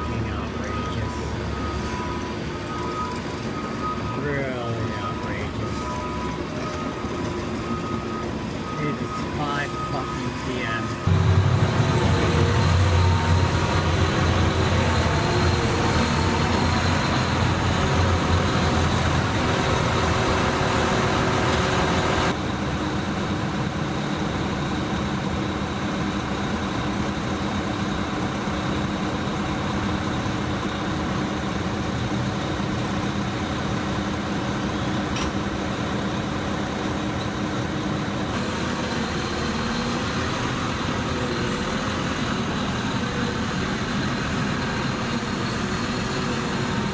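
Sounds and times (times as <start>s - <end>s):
heavy vehicle engines running: 0.0s - 46.9s.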